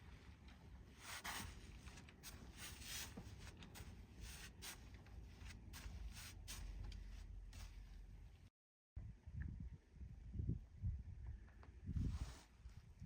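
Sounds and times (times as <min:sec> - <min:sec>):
faint rustling and scraping: 0:00.0 - 0:08.4.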